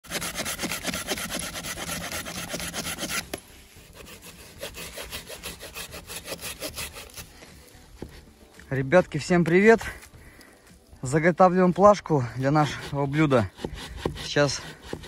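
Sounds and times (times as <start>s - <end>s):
saw cutting wood: 0.0s - 7.4s, 11.8s - 15.0s.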